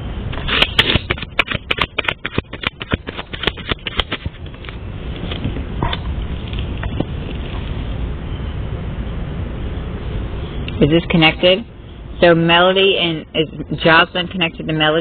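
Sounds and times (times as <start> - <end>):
cards being shuffled: 0.4 - 5.6.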